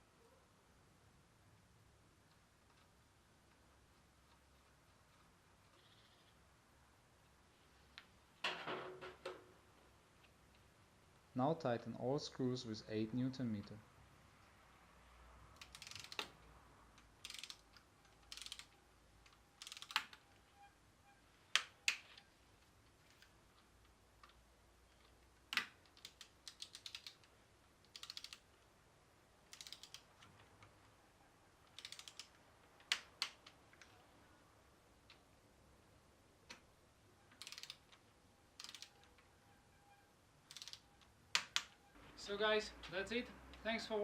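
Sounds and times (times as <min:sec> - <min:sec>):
sharp wrench clicks: 0:15.6 - 0:16.3, 0:17.2 - 0:18.8, 0:19.6 - 0:20.2, 0:25.5 - 0:27.2, 0:27.9 - 0:28.4, 0:29.5 - 0:30.1, 0:31.7 - 0:33.5, 0:37.4 - 0:37.9, 0:38.6 - 0:39.0, 0:40.5 - 0:40.8
torque wrench ratcheting: 0:15.6 - 0:16.3, 0:17.2 - 0:18.8.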